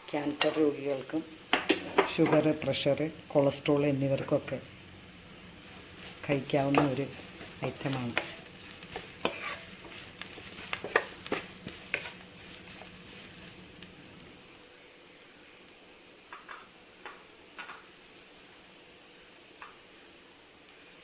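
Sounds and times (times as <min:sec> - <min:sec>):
faint frying sizzle: 0:00.0 - 0:21.0
spoon clicking and scraping pan: 0:06.1 - 0:13.0.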